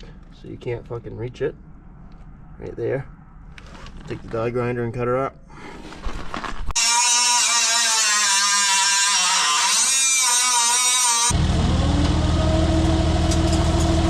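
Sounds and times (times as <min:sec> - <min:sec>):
die grinder whining: 0:06.8 - 0:14.0
vehicle engine idling: 0:11.3 - 0:14.0.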